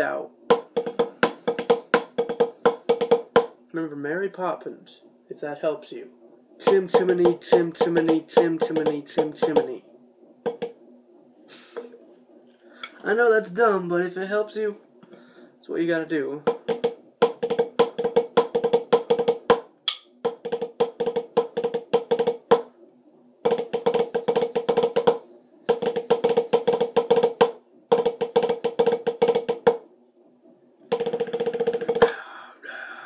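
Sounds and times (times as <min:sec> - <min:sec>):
snare drum flams and taps: 0:00.4 - 0:03.6, 0:06.6 - 0:09.8, 0:10.4 - 0:10.8, 0:16.4 - 0:22.7, 0:23.4 - 0:29.9, 0:30.9 - 0:32.1.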